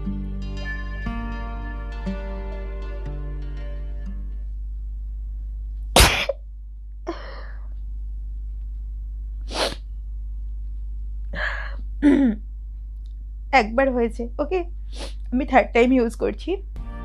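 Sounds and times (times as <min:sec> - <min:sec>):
steady low hum: 0:00.0 - 0:17.0
woman sneezing: 0:06.0 - 0:06.4.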